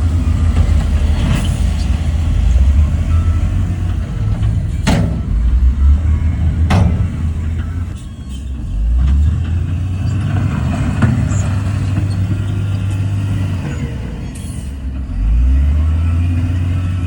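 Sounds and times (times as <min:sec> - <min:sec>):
heavy diesel engine rumbling: 0:00.0 - 0:17.0.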